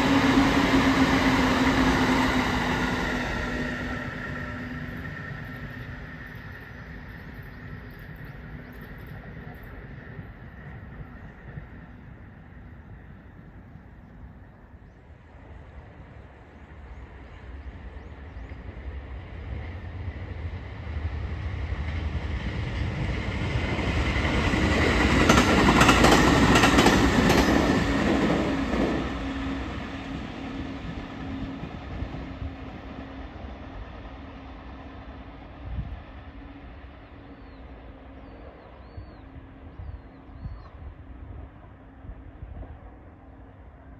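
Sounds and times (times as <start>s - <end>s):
train passing: 0.0s - 43.9s
wheels clicking over rail joints: 24.5s - 28.9s.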